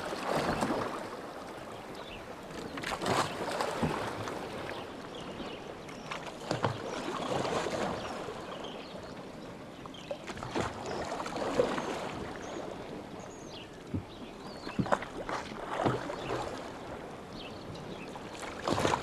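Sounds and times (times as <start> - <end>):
water splashing: 0.0 - 4.9, 14.7 - 16.8, 18.4 - 19.0
oars pulling through water: 0.0 - 19.0.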